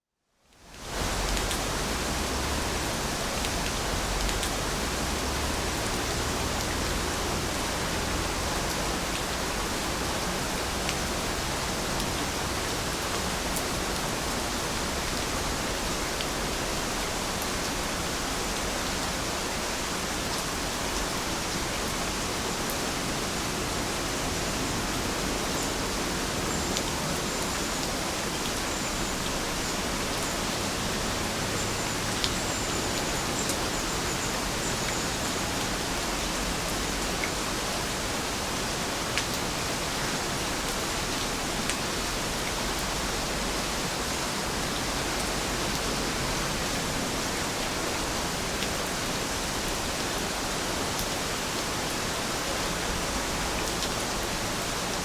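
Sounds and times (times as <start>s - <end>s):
rain drop ticks: 1.2s - 1.8s, 3.4s - 6.0s.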